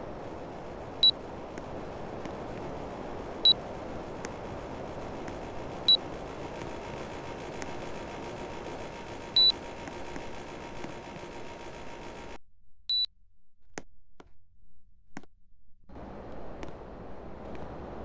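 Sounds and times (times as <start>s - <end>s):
air conditioner humming: 0.0s - 12.4s, 15.9s - 18.0s
air conditioner beeps: 0.7s - 1.2s, 2.6s - 13.1s
sharp clicks: 3.4s - 13.1s.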